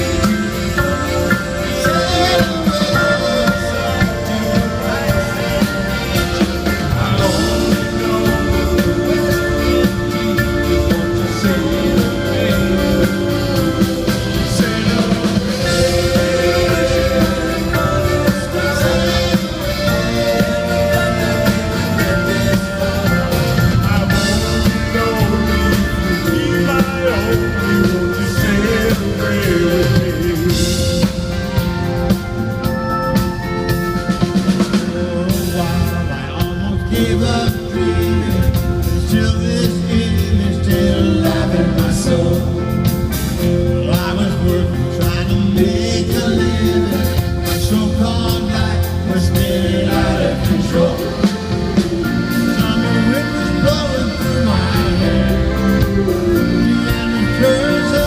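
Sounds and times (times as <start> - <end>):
live band playing: 0.0 - 58.0
person singing: 0.0 - 58.0.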